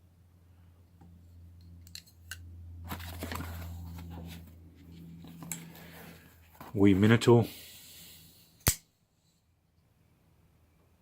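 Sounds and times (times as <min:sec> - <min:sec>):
handling rustle: 0:02.8 - 0:07.2
folding knife clicks: 0:08.6 - 0:08.8.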